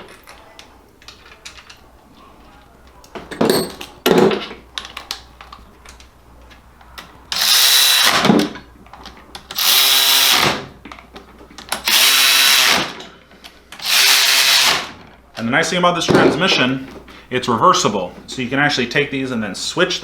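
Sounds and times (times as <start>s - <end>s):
metal parts clicking and knocking: 3.3s - 5.2s
power drill driving bolts: 7.3s - 8.5s, 9.5s - 10.6s, 11.8s - 13.0s, 13.8s - 15.0s.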